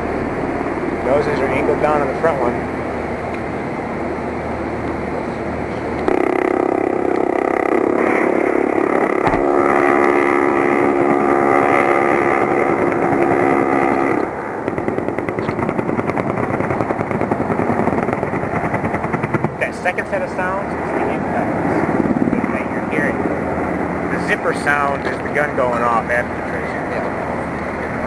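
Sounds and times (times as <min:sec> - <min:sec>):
aircraft gun firing burst: 0:06.1 - 0:19.7.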